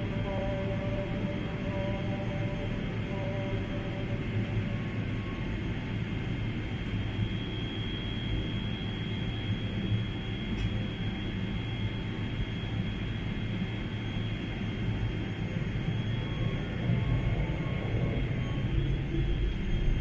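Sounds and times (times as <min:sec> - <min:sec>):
thin high whine: 0:00.0 - 0:12.4
airliner cabin engine and airflow noise: 0:00.0 - 0:20.0.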